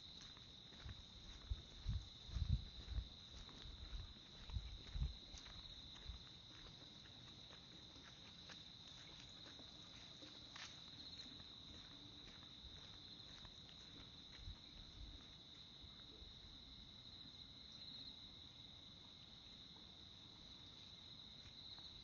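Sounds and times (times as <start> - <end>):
soft footsteps: 0.0 - 15.7.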